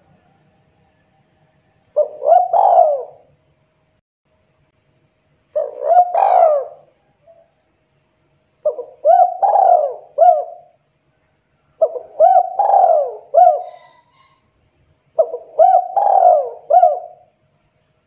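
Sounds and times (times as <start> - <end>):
dove cooing: 1.9 - 3.3, 5.5 - 7.5, 8.6 - 10.8, 11.8 - 14.5, 15.2 - 17.3.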